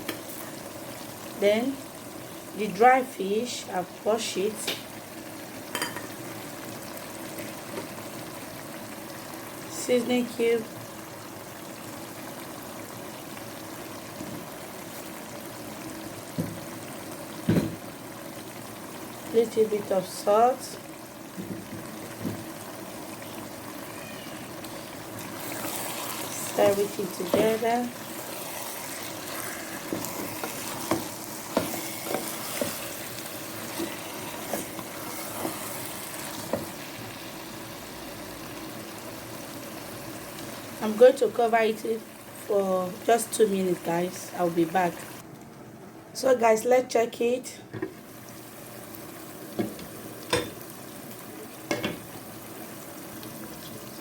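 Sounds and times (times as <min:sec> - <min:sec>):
sauce simmering and bubbling: 0:00.0 - 0:02.6, 0:04.8 - 0:09.8, 0:10.6 - 0:40.9, 0:41.6 - 0:42.5, 0:48.0 - 0:54.0
spoon knocking and scraping pot: 0:29.8 - 0:32.9.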